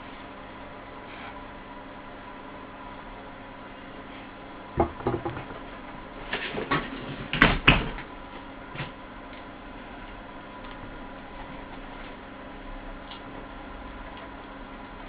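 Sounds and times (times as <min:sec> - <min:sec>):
faint steady hum: 0:00.0 - 0:15.0
hard objects knocking: 0:04.8 - 0:05.7.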